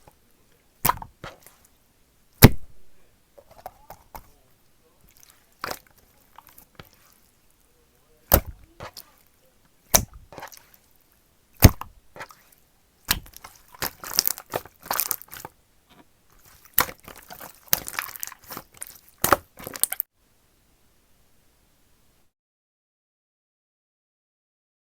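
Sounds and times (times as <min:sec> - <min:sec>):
slime popping and crackling: 0:00.8 - 0:01.6, 0:02.4 - 0:04.3, 0:05.0 - 0:07.1, 0:08.2 - 0:09.2, 0:09.9 - 0:10.8, 0:11.6 - 0:12.5, 0:13.1 - 0:15.6, 0:16.4 - 0:20.1.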